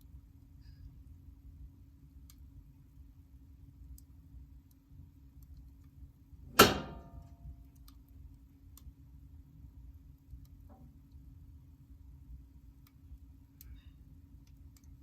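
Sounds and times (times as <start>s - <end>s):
firewood burning and crackling: 0.1s - 15.0s
sharp pop from fire: 6.5s - 7.3s.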